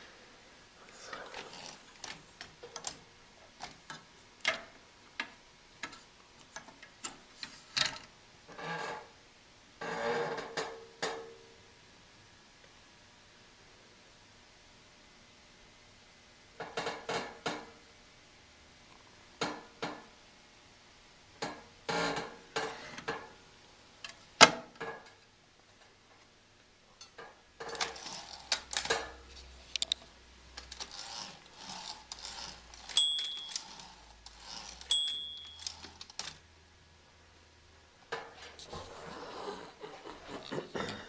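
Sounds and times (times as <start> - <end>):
typewriter bell ring: 32.9 - 36.1.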